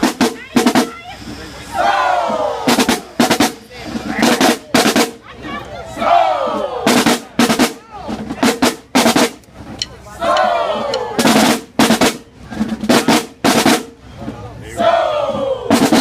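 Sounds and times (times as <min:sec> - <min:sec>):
drumline playing a cadence: 0:00.0 - 0:16.0
crowd yelling and cheering: 0:00.4 - 0:04.2, 0:05.3 - 0:08.1, 0:10.0 - 0:11.4, 0:14.1 - 0:16.0.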